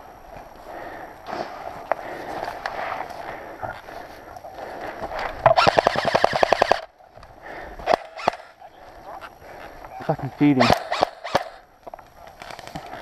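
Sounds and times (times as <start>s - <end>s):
rustling of movement: 0.0s - 13.0s
airsoft gun full-auto burst: 5.5s - 6.9s, 10.6s - 11.6s.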